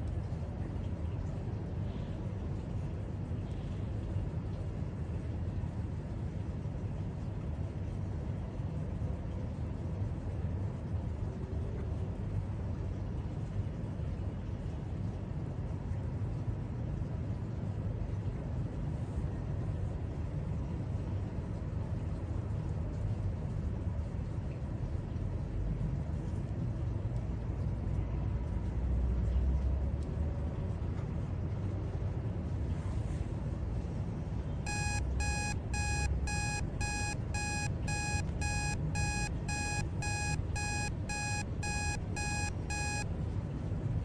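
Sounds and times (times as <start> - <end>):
timer alarm beeping: 34.7 - 43.1.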